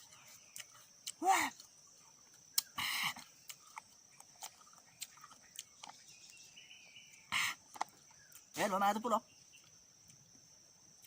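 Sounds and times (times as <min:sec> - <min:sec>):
person chewing: 0:00.0 - 0:06.0.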